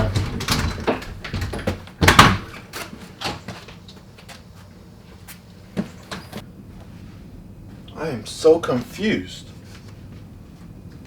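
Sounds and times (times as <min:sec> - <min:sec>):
door opening: 0:00.0 - 0:03.8
knocks and clatter: 0:00.0 - 0:03.8.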